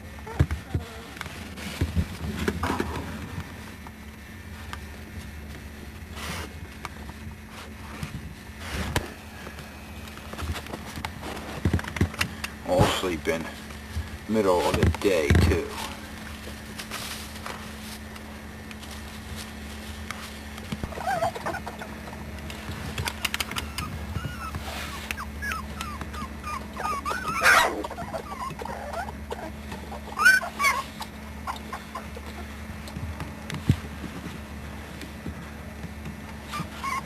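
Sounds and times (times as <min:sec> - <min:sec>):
puppies squeaking and whimpering: 0:20.8 - 0:32.6, 0:36.4 - 0:37.0.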